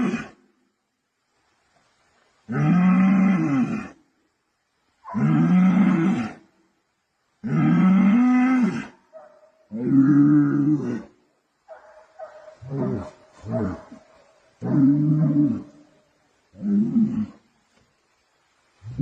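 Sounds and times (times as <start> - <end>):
bull bellowing: 2.5 - 4.0, 5.0 - 6.4, 7.4 - 11.2, 12.2 - 17.5.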